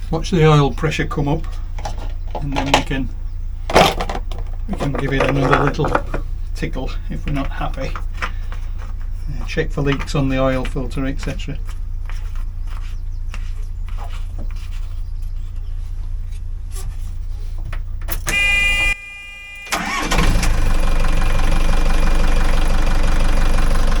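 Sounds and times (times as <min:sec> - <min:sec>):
diesel engine starting and running: 0:17.9 - 0:24.0
high warning buzzer: 0:18.3 - 0:20.6.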